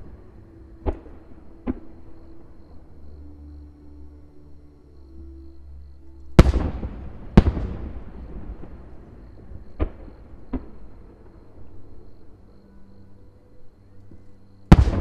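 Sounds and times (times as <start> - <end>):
fireworks booming with echoing rumble: 6.4 - 11.2, 14.7 - 15.0.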